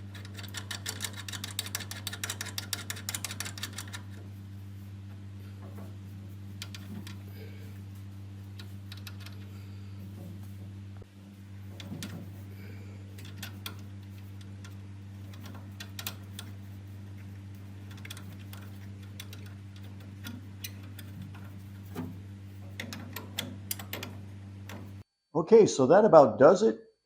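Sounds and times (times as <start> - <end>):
small metal parts clicking: 0.0 - 4.2, 6.6 - 7.2, 8.5 - 9.5, 13.1 - 16.7, 17.5 - 22.1, 22.7 - 25.0
steady low hum: 0.0 - 25.8.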